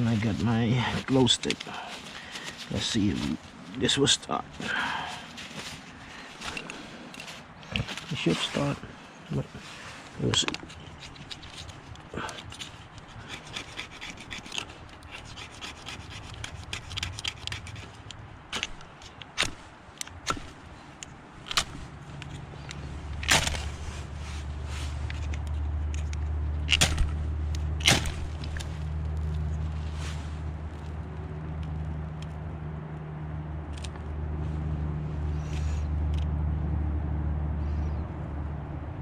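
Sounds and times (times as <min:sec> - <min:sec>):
steady low rumble: 0:00.0 - 0:39.0
fire starter scraping strikes: 0:24.9 - 0:27.2.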